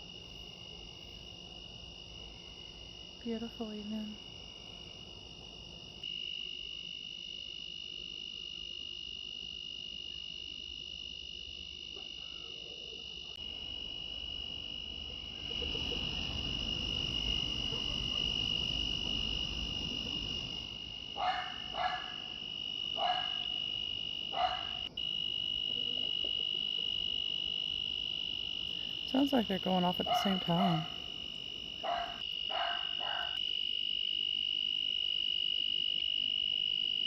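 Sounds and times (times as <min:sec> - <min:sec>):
crickets chirring: 0:00.0 - 0:37.0
frog calls: 0:20.0 - 0:33.5.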